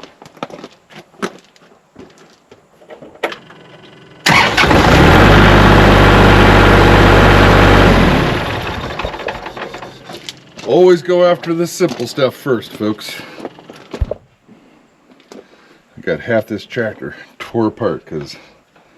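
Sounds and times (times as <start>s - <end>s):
diesel tractor engine starting: 3.4s - 10.9s.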